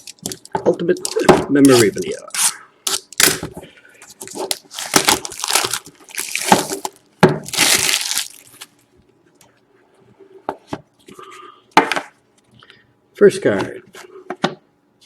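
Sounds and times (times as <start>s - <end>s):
packaging crinkling and rustling: 0.0s - 3.4s, 4.1s - 8.8s.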